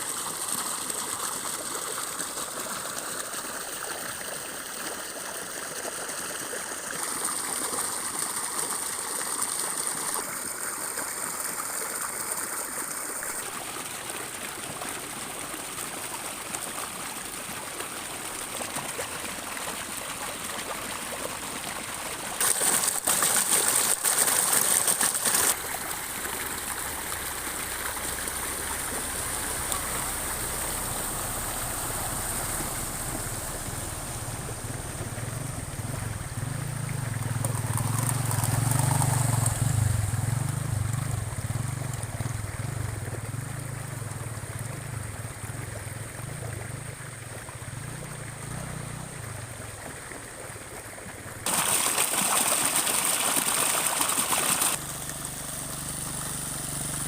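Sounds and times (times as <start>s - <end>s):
floodwater rushing: 0.0s - 57.0s
vehicle engine hum: 25.5s - 51.6s, 54.7s - 57.0s.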